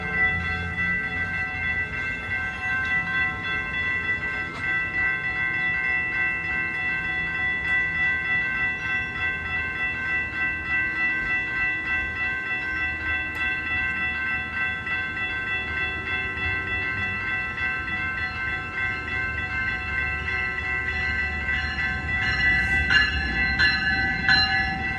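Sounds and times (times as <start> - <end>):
railroad crossing bell ringing: 0.0 - 24.9.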